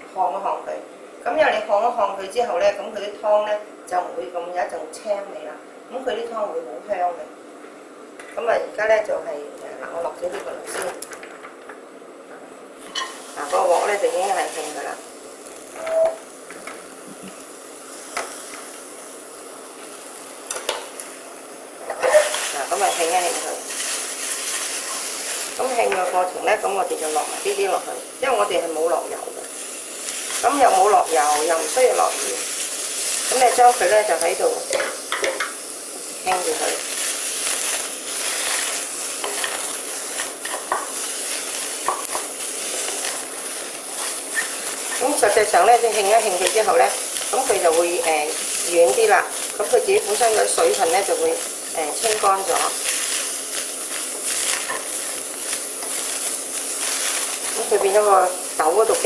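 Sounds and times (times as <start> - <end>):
beans roasting in a wok: 12.6 - 59.0.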